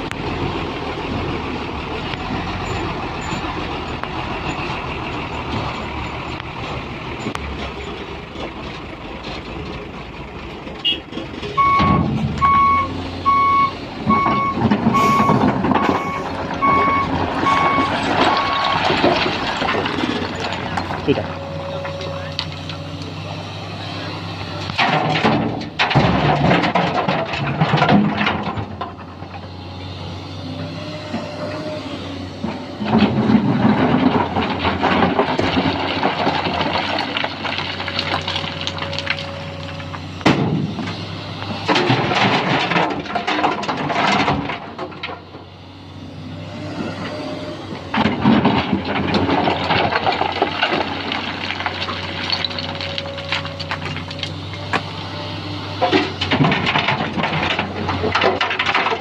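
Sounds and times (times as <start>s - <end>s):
excavator diesel engine running: 0.0s - 59.0s
stones crashing into steel truck bed: 14.0s - 21.2s, 24.7s - 29.4s, 32.8s - 40.9s, 41.6s - 45.4s, 47.8s - 54.9s, 55.8s - 59.0s.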